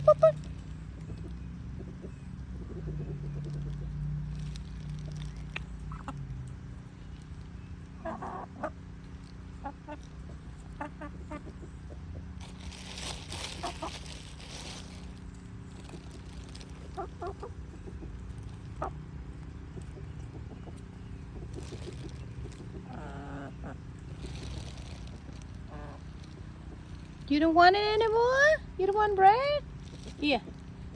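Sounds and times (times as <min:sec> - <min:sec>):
chickens clucking: 0:00.0 - 0:30.9
rustling: 0:12.3 - 0:28.2, 0:29.6 - 0:30.9.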